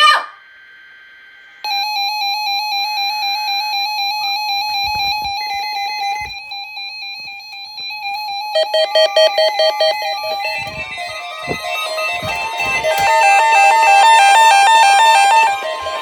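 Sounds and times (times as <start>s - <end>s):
lower pulsing beep: 0.6s - 16.0s
loud electronic beep pulsing: 0.7s - 16.0s.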